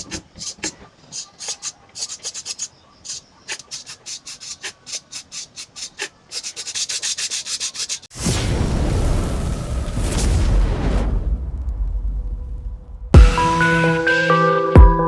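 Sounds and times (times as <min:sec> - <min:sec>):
rubbing rasping strokes: 0:00.0 - 0:08.1.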